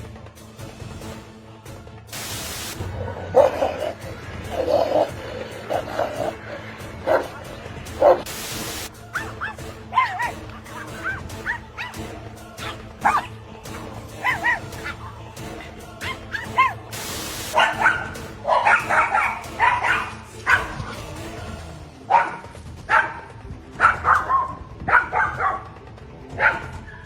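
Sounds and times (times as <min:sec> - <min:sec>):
dog barking and yipping: 0:03.1 - 0:04.0, 0:09.0 - 0:15.3, 0:16.0 - 0:20.8, 0:22.1 - 0:25.7, 0:26.4 - 0:27.0.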